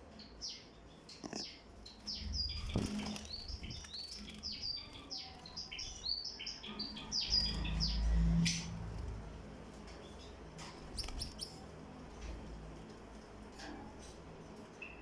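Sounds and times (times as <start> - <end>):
low rumble: 6.9 - 9.8.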